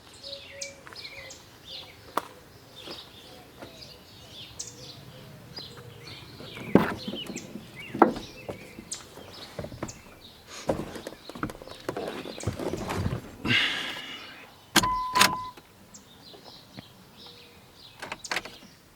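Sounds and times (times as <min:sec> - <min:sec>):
birds chirping: 0:00.0 - 0:18.9
sharp knocks and clicks: 0:06.5 - 0:09.0.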